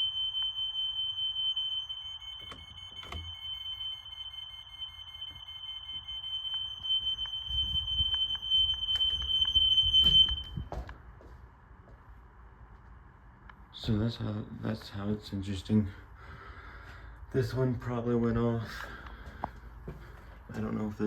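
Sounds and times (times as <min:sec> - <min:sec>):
smoke alarm tone: 0:00.0 - 0:10.9.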